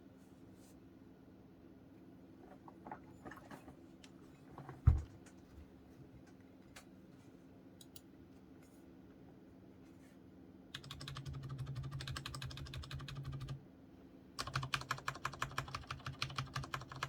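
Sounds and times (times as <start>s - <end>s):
mechanical keyboard keystrokes: 10.8s - 13.6s, 14.4s - 17.0s.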